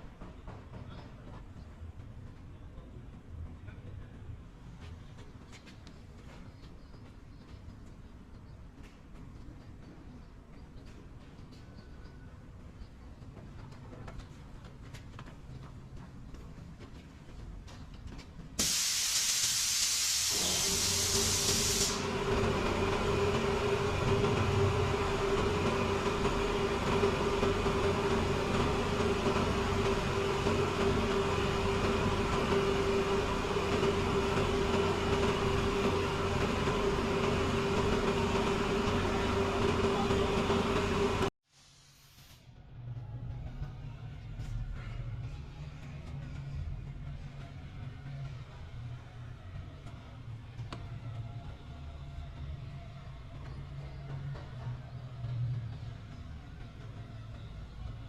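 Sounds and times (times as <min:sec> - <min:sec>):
loud hiss of air: 0:18.6 - 0:40.4, 0:41.0 - 0:42.6
air tool running high pitch: 0:18.6 - 0:41.3.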